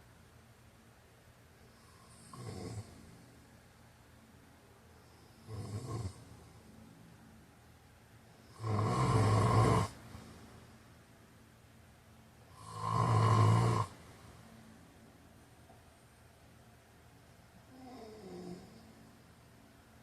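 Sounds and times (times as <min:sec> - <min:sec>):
man snoring: 0:01.9 - 0:03.0, 0:05.4 - 0:06.2, 0:08.5 - 0:10.0, 0:12.5 - 0:14.0, 0:17.7 - 0:18.8.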